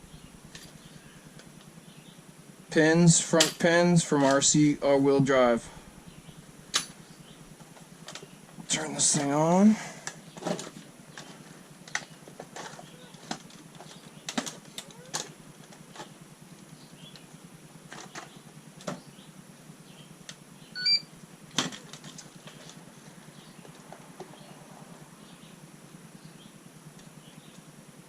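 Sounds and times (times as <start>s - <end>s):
short high beep: 20.8s - 21.0s.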